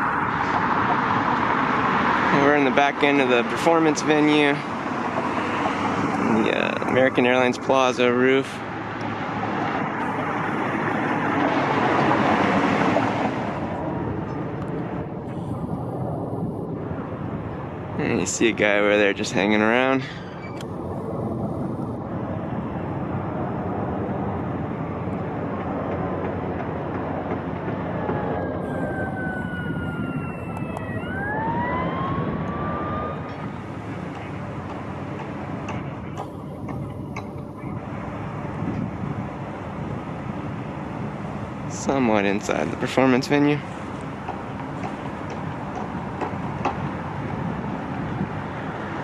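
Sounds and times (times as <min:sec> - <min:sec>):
distant siren wailing: 0:00.0 - 0:02.8, 0:20.2 - 0:41.7
road vehicle passing: 0:00.0 - 0:49.0
traffic rumble: 0:00.0 - 0:49.0.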